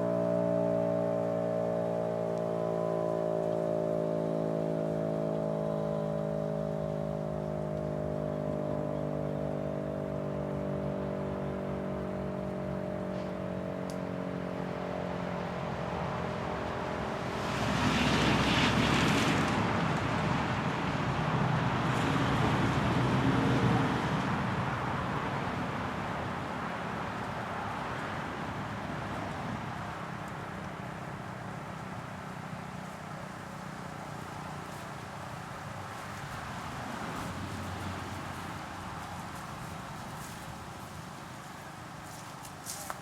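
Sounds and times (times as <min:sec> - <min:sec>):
siren winding down: 0:00.0 - 0:13.8
car passing close by: 0:00.0 - 0:43.0.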